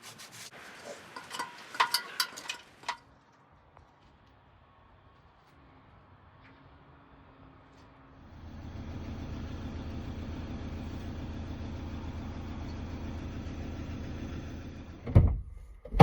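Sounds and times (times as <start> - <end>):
vehicle engine running: 8.2 - 15.1.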